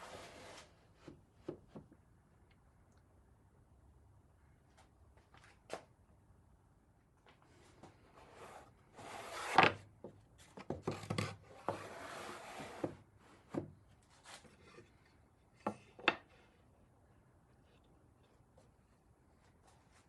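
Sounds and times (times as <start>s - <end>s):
wood rubbing and sliding: 8.1s - 9.8s, 10.6s - 15.0s.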